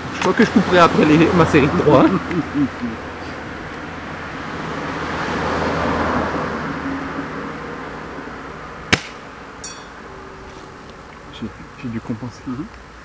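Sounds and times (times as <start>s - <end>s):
road vehicle passing: 0.0s - 13.0s
airsoft rifle shot snap: 8.9s - 9.2s.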